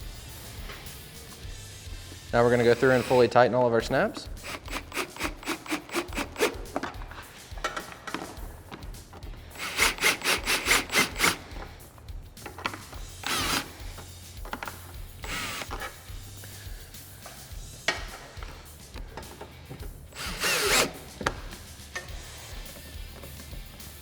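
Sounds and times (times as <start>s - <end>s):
background music: 0.0s - 24.0s
tool handling noises: 2.4s - 24.0s
ratchet wrench clicking: 2.5s - 8.2s, 9.5s - 11.7s, 12.4s - 16.5s, 19.0s - 22.5s.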